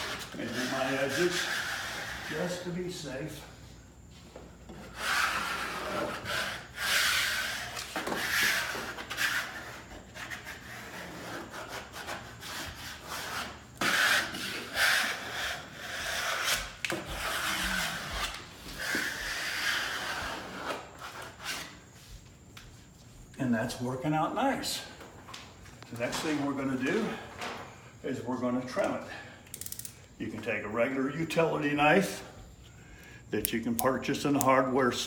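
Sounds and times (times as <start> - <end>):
squeegee rubbing on wallpaper: 0.0 - 3.0, 4.8 - 22.1.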